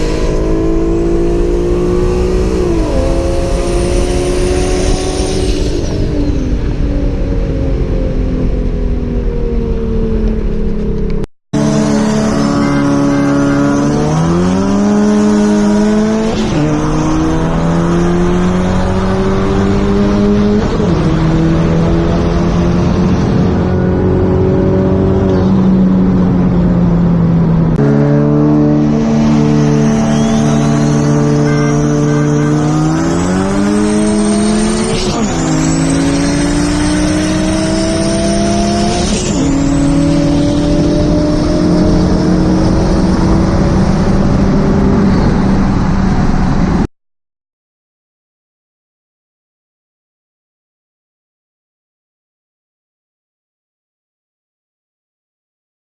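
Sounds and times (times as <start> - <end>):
car engine accelerating hard: 0.0 - 46.9
turbo whistle: 29.0 - 36.8.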